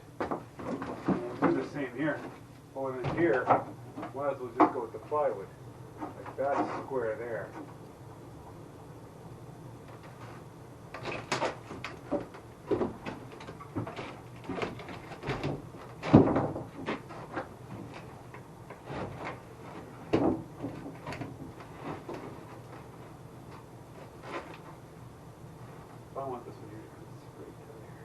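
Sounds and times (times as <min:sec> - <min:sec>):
wood pieces knocking and clunking: 0:00.2 - 0:02.4, 0:03.0 - 0:04.8, 0:10.9 - 0:22.9.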